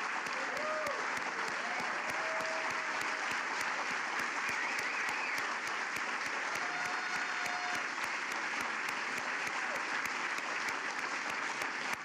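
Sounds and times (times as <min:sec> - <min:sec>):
large audience applauding: 0:00.0 - 0:12.0.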